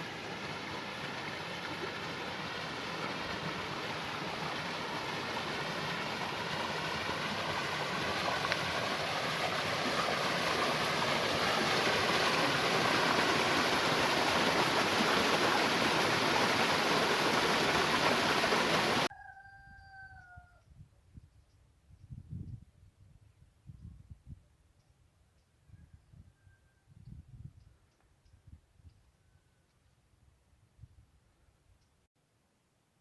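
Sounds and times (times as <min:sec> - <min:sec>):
rushing water: 0:00.0 - 0:19.1
rooster crowing: 0:19.0 - 0:20.7.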